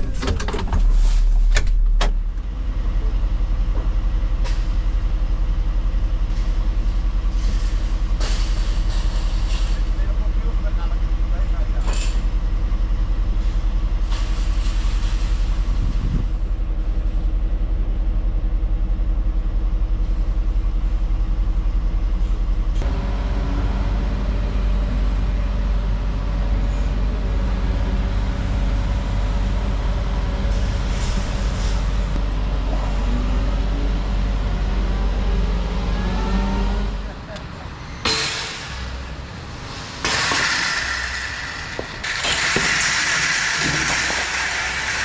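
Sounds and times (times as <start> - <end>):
diesel engine running: 0.0 - 45.0.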